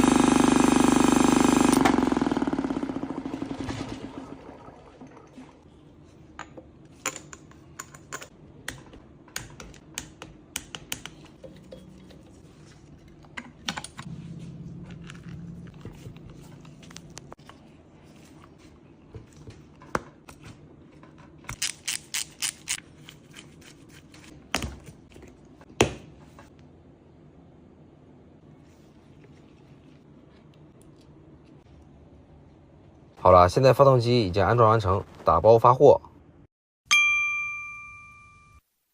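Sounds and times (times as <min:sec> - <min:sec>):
hand tools and metal parts clicking: 0:21.5 - 0:23.2.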